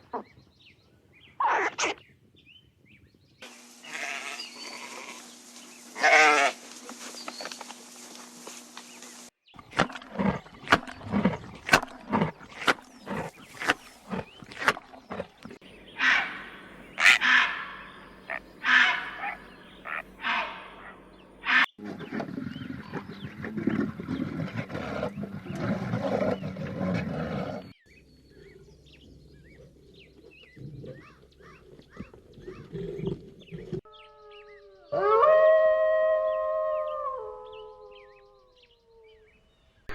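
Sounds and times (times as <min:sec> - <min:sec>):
animal calls: 0:03.8 - 0:05.4, 0:09.6 - 0:21.7
held pitched call: 0:15.8 - 0:21.7.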